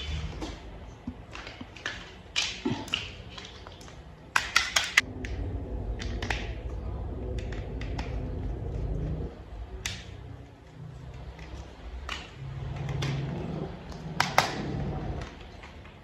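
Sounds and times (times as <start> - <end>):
low steady hum: 0.0 - 16.0
plastic toy parts clicking: 1.3 - 5.0, 7.4 - 8.2.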